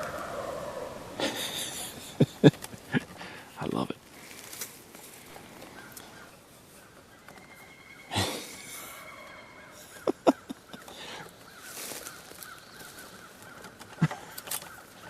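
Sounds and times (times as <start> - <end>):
crows cawing: 0.0 - 1.8, 5.3 - 15.0
faint bird call: 0.0 - 2.2.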